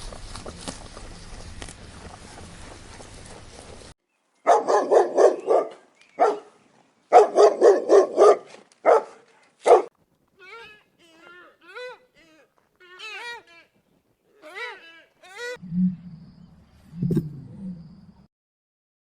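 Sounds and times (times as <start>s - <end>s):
dog barking: 4.4s - 9.9s.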